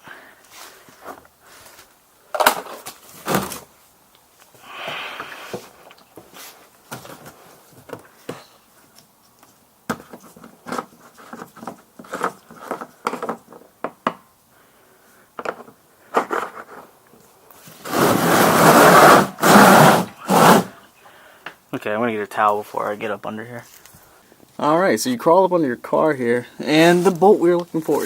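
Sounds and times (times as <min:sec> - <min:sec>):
things being handled and moved: 0:00.1 - 0:14.2, 0:15.3 - 0:20.8, 0:22.6 - 0:24.6, 0:26.6 - 0:28.0
loud rough scraping: 0:17.8 - 0:20.8.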